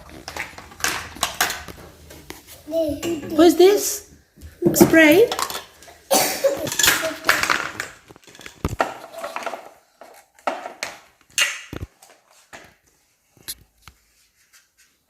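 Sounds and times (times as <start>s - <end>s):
plastic parts clicking and knocking: 0.0s - 2.4s, 4.6s - 12.8s.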